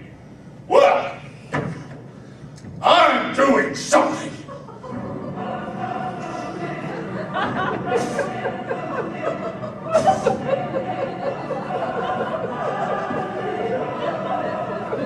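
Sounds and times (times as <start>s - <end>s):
audience laughing: 4.2s - 15.0s.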